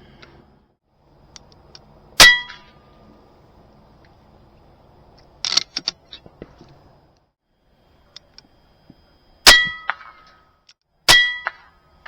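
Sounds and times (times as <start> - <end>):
airgun shot with metallic ring: 9.4 - 10.4, 11.1 - 11.8.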